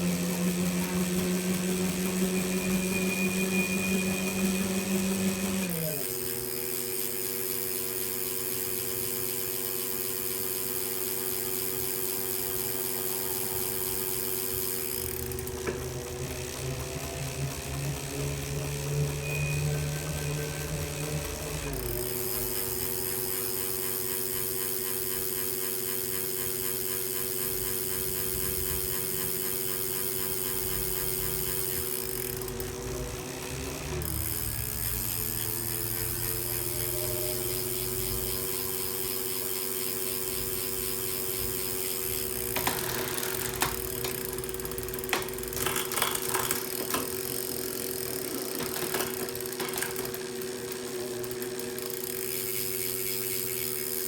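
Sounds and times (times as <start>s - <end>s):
bike trainer whine: 0.0s - 54.0s
irregular clicks and ticks: 33.9s - 54.0s.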